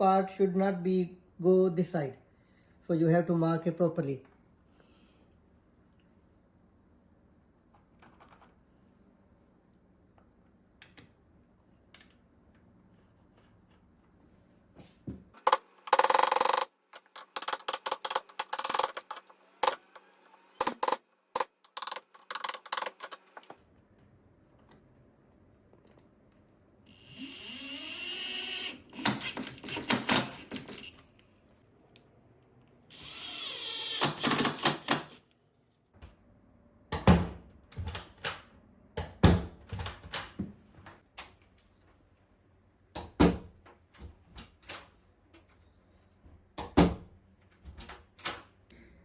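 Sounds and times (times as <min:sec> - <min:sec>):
power drill driving screws: 0:26.9 - 0:30.6, 0:32.9 - 0:35.2.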